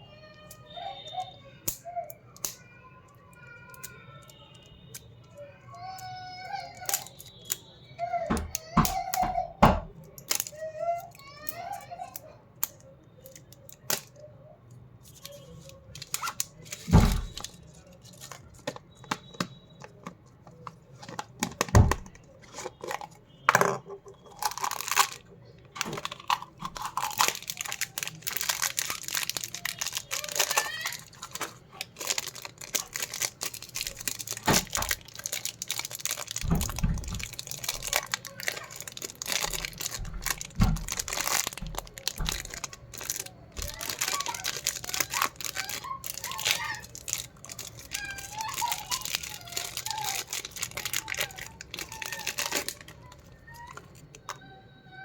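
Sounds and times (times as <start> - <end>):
packaging tearing and crinkling: 15.0 - 54.3.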